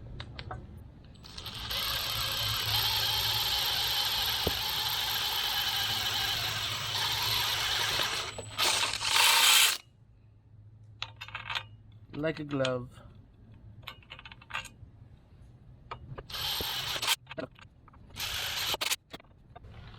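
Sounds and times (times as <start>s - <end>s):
power drill boring metal: 1.3s - 9.8s, 16.3s - 17.2s, 18.2s - 19.0s.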